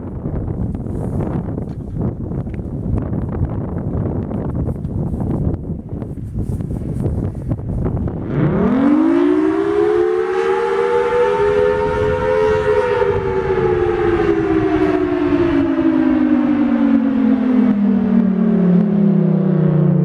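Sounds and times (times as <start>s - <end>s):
wind buffeting microphone: 0.0s - 20.0s
fire siren winding up: 8.2s - 20.0s.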